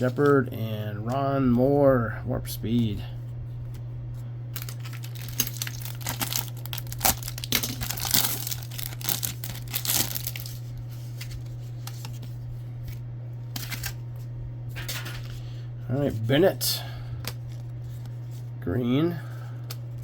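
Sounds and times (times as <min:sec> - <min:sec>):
foil wrapper tearing and crinkling: 0:04.6 - 0:12.0.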